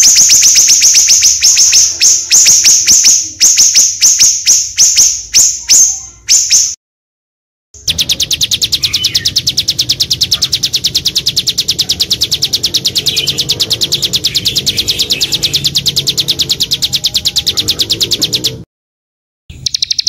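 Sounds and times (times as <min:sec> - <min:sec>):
lower bird warbling: 0:00.0 - 0:06.8, 0:07.8 - 0:18.6, 0:19.5 - 0:20.0
songbird rapid trill: 0:00.0 - 0:06.8, 0:07.8 - 0:18.6, 0:19.5 - 0:20.0.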